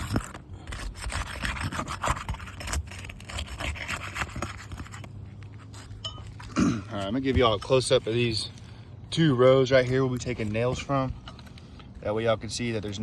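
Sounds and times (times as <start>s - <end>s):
hand tool scraping shingles: 0.0s - 8.5s.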